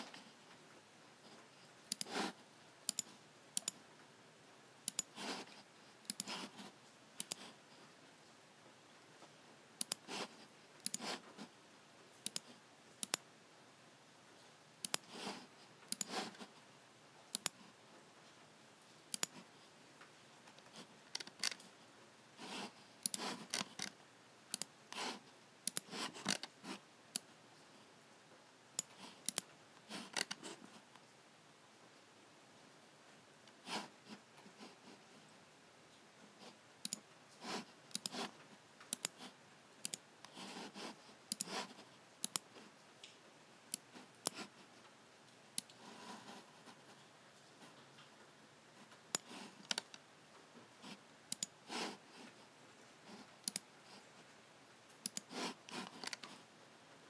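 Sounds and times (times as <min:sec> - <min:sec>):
computer mouse buttons clicking: 0:01.9 - 0:02.2, 0:02.9 - 0:03.8, 0:04.9 - 0:05.4, 0:06.1 - 0:06.6, 0:07.2 - 0:07.5, 0:09.8 - 0:10.2, 0:10.8 - 0:11.2, 0:12.2 - 0:13.2, 0:14.8 - 0:15.3, 0:15.9 - 0:16.4, 0:17.3 - 0:17.6, 0:19.1 - 0:19.4, 0:20.6 - 0:21.6, 0:23.0 - 0:24.7, 0:25.6 - 0:26.5, 0:28.8 - 0:30.5, 0:36.8 - 0:37.0, 0:37.9 - 0:40.5, 0:41.3 - 0:42.5, 0:43.7 - 0:44.5, 0:49.1 - 0:50.0, 0:51.3 - 0:51.5, 0:53.4 - 0:53.6, 0:55.0 - 0:56.4.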